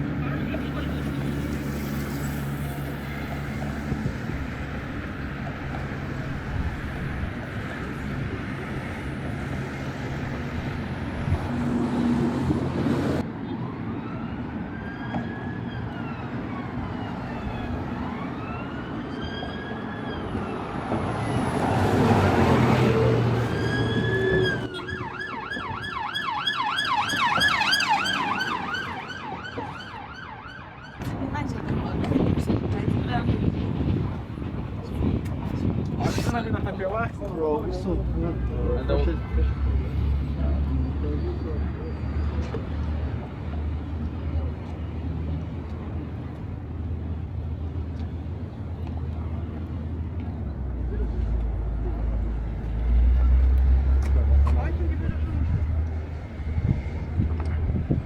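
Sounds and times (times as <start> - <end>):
road traffic: 0.0 - 58.0
emergency siren wailing and yelping: 13.6 - 20.7, 22.8 - 31.2
vehicle passing loudly: 20.8 - 29.1, 51.0 - 58.0.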